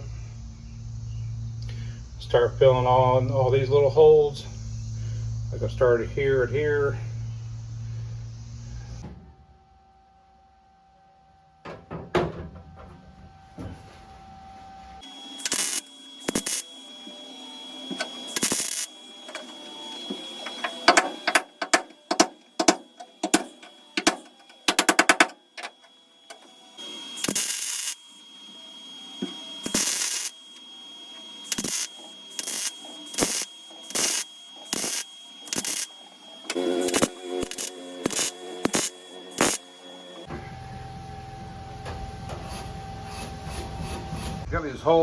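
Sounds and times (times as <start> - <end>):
welder crackling: 15.0 - 40.3.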